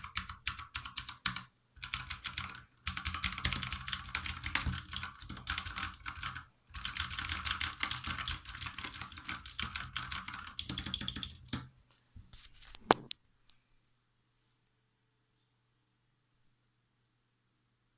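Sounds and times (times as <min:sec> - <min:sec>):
fast typing on mechanical keyboard: 0:00.0 - 0:11.7.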